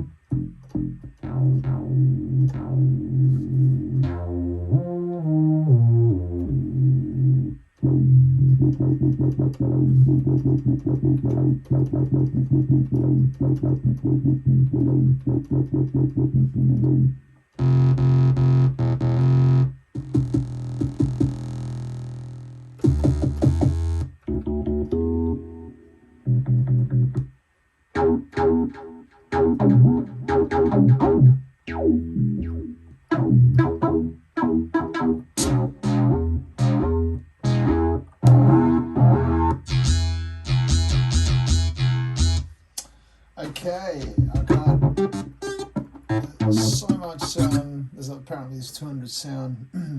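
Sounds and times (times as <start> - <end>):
low synth bass note: 0.0 - 27.2, 28.0 - 42.4
synthesizer playing repeating pattern: 17.6 - 25.2, 28.0 - 42.4, 44.4 - 47.6.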